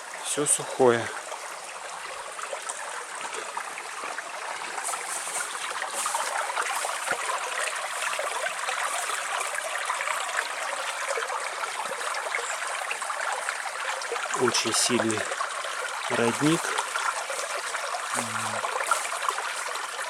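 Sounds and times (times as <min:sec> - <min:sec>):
spring water gushing and splashing: 0:00.0 - 0:20.0.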